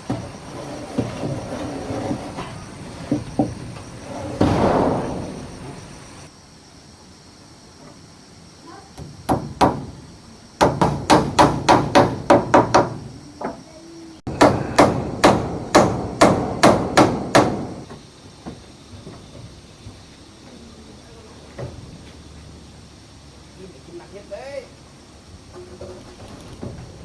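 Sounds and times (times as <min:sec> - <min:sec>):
hammer blows: 0:02.3 - 0:06.3, 0:14.3 - 0:17.9.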